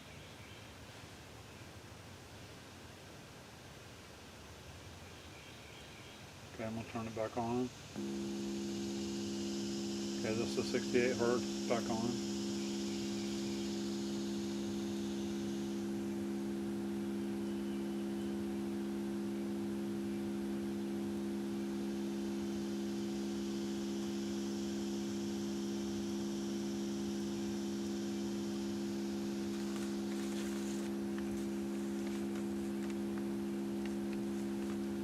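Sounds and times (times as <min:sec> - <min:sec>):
low test tone hum: 0:08.0 - 0:35.0.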